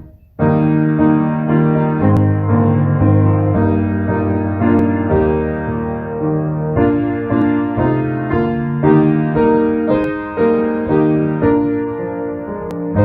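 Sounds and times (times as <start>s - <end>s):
piano playing slow chords: 0.0s - 13.0s.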